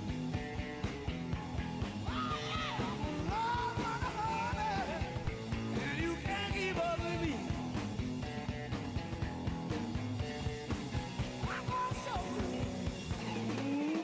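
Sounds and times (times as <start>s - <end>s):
rock song with drums: 0.0s - 14.0s
person singing: 2.2s - 5.2s.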